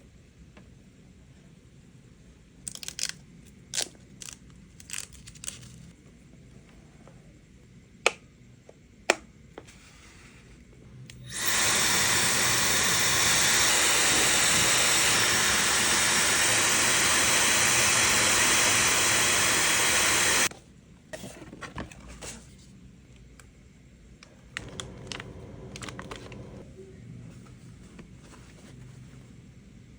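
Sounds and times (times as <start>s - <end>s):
hair dryer blowing: 11.2s - 20.5s, 24.6s - 26.6s.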